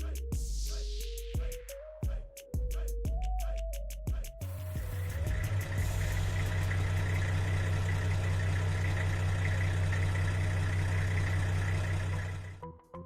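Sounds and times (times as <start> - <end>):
engine idling with deep hum: 0.0 - 1.5, 4.5 - 12.6.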